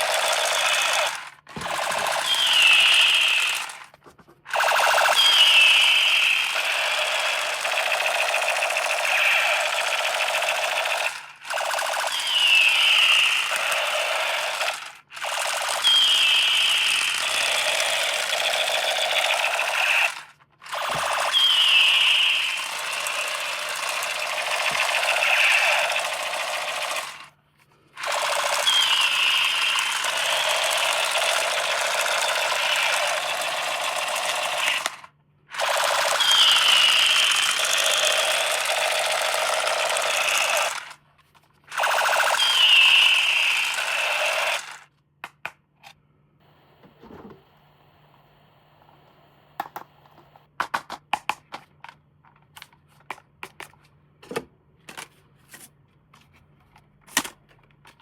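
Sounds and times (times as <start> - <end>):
toy motor buzzing and rattling: 0.0 - 27.3, 28.0 - 41.0, 41.7 - 44.9.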